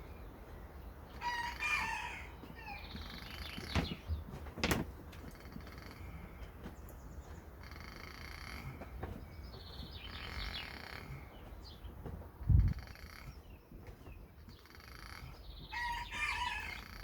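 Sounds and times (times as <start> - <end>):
rooster crowing: 1.2 - 2.9, 15.7 - 17.0.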